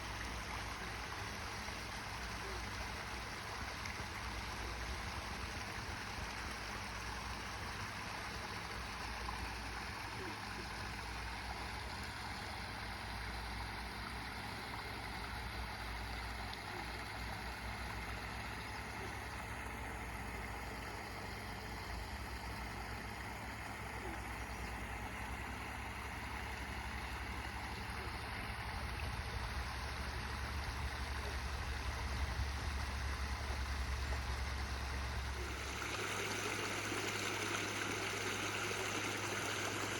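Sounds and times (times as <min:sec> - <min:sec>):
waterfall splashing: 0:35.2 - 0:39.9.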